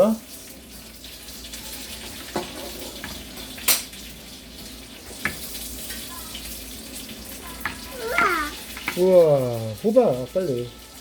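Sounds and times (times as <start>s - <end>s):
meat deep-frying in oil: 0.0s - 11.0s
dishes and utensils clinking: 2.0s - 4.0s.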